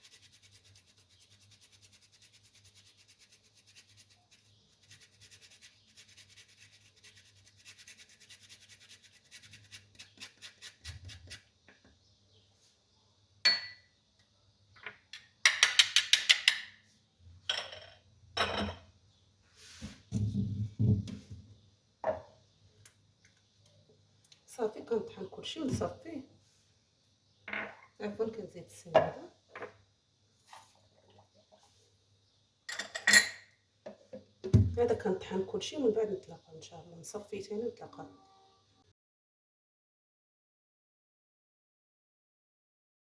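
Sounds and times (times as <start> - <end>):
ginger grating on a grater: 0.0 - 11.4.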